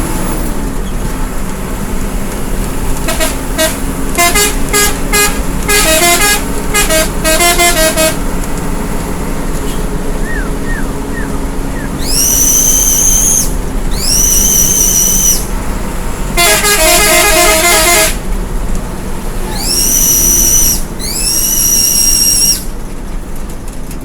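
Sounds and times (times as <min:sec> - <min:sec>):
road rumble: 0:00.0 - 0:24.0
bus air horn toots: 0:02.9 - 0:08.5, 0:09.5 - 0:18.3
rapid horn melody: 0:03.0 - 0:08.4, 0:16.3 - 0:18.3.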